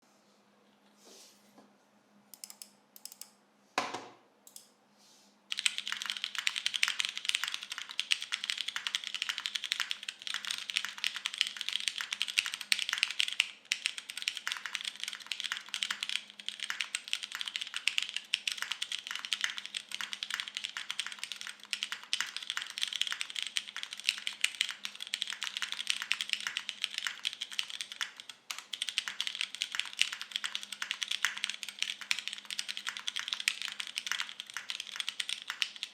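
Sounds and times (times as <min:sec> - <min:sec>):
mechanical keyboard typing: 0:02.4 - 0:03.3, 0:05.5 - 0:35.9.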